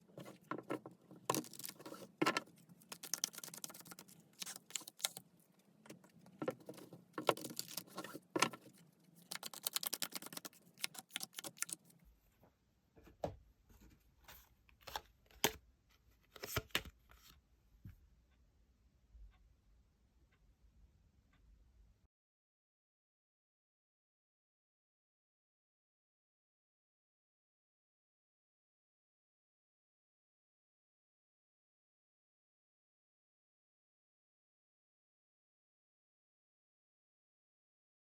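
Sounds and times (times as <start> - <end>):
cards being shuffled: 1.3 - 5.2, 6.4 - 11.8.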